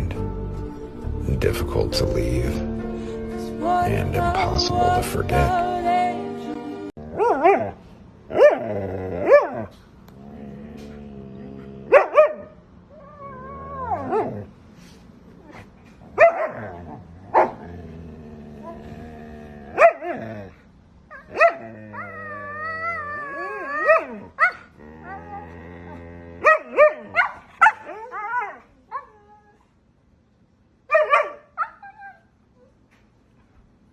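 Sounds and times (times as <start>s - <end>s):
dog howling: 7.1s - 14.5s, 21.1s - 29.6s
dog barking and yipping: 7.2s - 9.7s, 11.9s - 12.5s, 16.1s - 16.7s, 17.3s - 17.6s, 19.8s - 20.2s, 21.1s - 21.7s, 26.4s - 29.1s, 30.9s - 32.2s.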